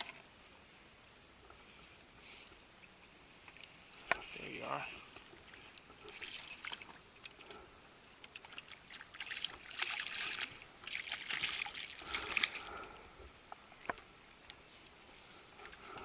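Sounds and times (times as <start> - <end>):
water splashing and dripping: 5.1 - 7.5, 8.2 - 12.7.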